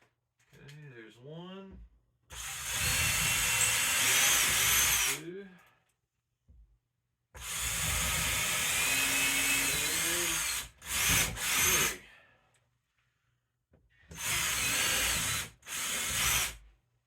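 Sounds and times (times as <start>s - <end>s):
power drill boring into wood: 2.3s - 5.2s, 7.4s - 12.0s, 14.1s - 16.6s.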